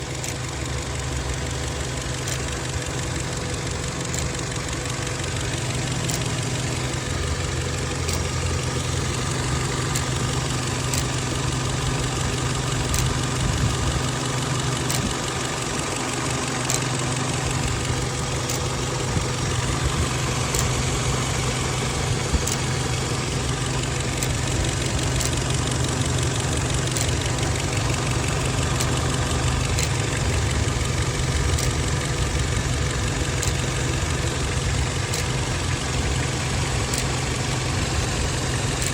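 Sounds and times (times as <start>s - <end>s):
car engine idling: 0.0s - 38.9s
faint sharp ticks: 14.8s - 15.2s, 33.3s - 33.9s.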